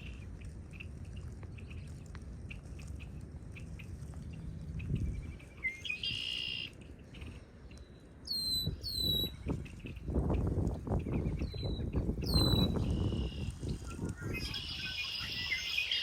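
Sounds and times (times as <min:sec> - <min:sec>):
wind on microphone: 0:00.0 - 0:06.2, 0:08.3 - 0:16.0
birds calling: 0:00.0 - 0:16.0
high whistled bird calls: 0:05.1 - 0:06.8, 0:07.8 - 0:09.4, 0:11.1 - 0:16.0.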